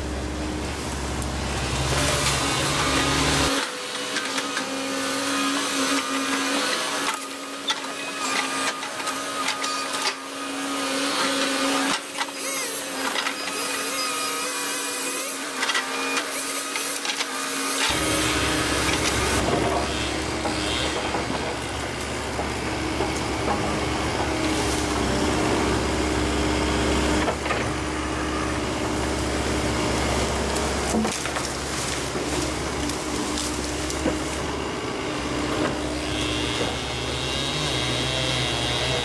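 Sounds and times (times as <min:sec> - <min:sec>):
excavator engine and hydraulics hum: 0:00.0 - 0:39.0
wood and brush snapping: 0:30.5 - 0:34.4.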